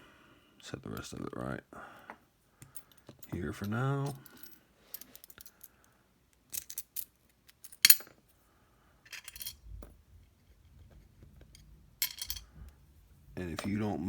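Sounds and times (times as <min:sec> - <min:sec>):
small metal parts clinking: 0:02.6 - 0:08.2, 0:09.1 - 0:09.7, 0:10.8 - 0:12.7.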